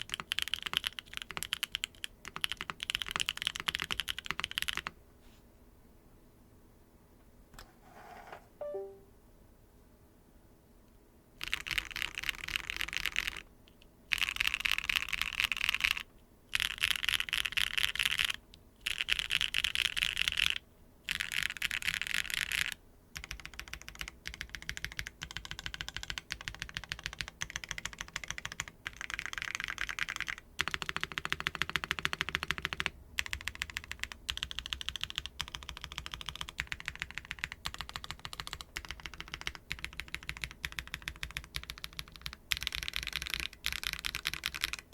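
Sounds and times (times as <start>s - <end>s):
mechanical keyboard typing: 0.0s - 5.0s, 11.4s - 13.4s, 14.1s - 44.9s.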